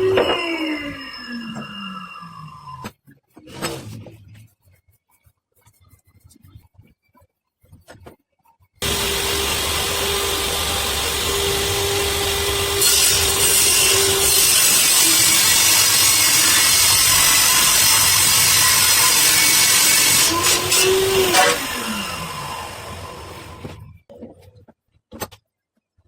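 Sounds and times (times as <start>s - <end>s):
power tool cutting wood: 0.0s - 2.4s, 8.8s - 23.8s
motor hum: 8.8s - 23.8s.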